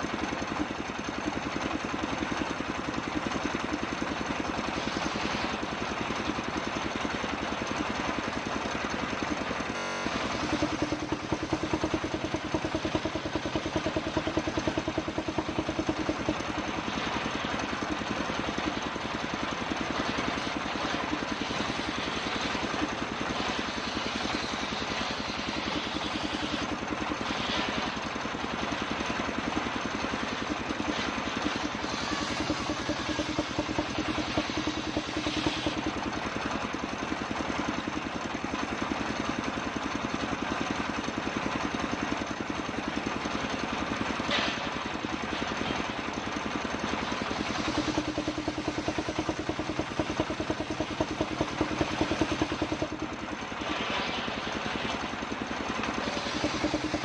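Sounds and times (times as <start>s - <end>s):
circular saw cutting wood: 20.2s - 28.0s, 31.0s - 35.9s, 47.0s - 57.0s.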